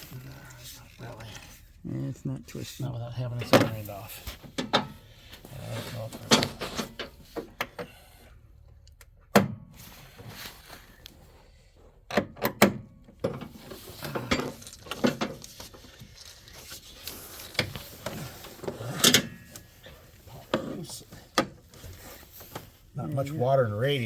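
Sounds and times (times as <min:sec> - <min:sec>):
tools knocking and clunking: 0:04.4 - 0:05.0.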